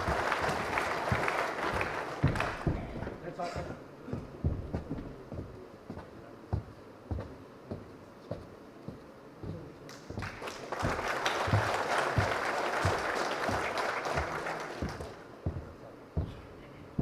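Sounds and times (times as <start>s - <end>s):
audience applauding: 0.0s - 3.0s, 9.9s - 15.3s
regular low thuds: 0.0s - 17.0s.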